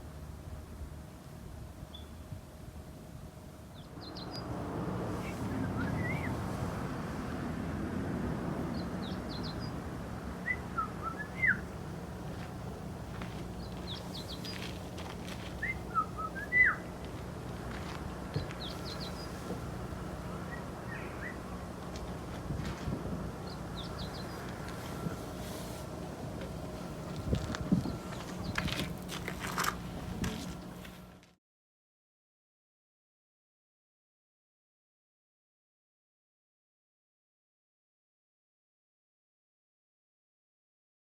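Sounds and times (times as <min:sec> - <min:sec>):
small bird chirping: 0:13.6 - 0:14.7, 0:18.4 - 0:19.4, 0:23.4 - 0:25.1.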